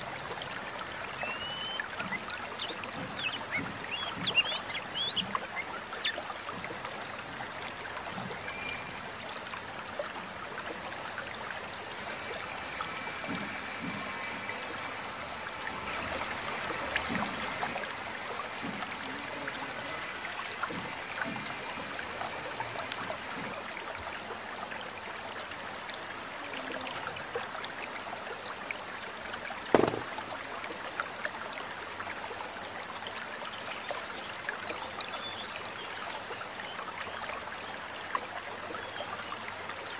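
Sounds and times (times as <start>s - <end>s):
stream water trickling: 0.0s - 39.9s
sharp knock: 29.7s - 30.2s.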